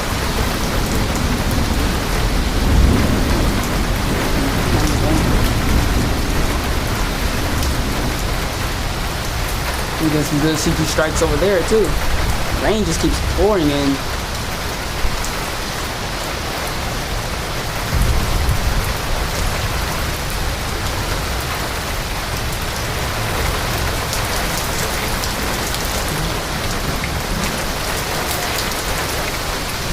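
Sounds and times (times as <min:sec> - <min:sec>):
heavy rain pouring: 0:00.0 - 0:29.9.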